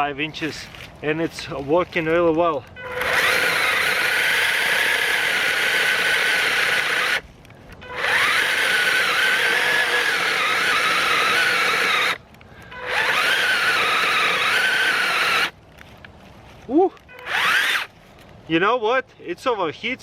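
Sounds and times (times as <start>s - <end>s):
electric chainsaw whining: 2.8s - 15.6s, 17.1s - 17.9s.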